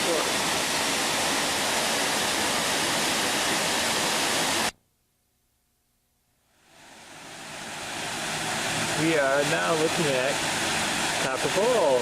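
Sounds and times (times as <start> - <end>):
waterfall rushing: 0.0 - 4.7, 6.6 - 12.0.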